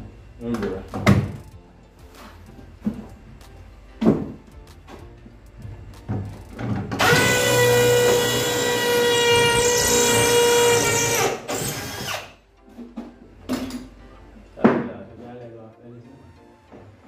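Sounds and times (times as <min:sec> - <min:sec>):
electric drill motor whine: 0:07.0 - 0:12.4.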